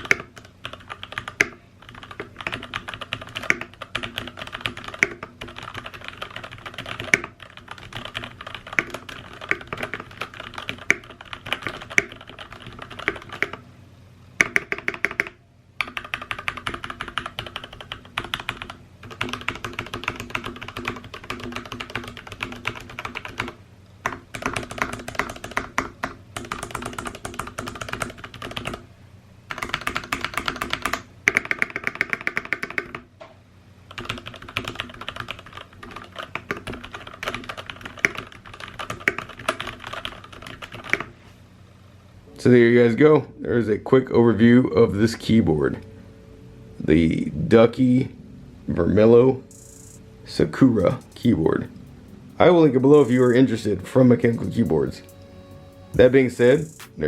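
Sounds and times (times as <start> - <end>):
typing on mechanical keyboard: 0.0 - 13.6, 14.4 - 28.8, 29.5 - 33.0, 33.9 - 41.1.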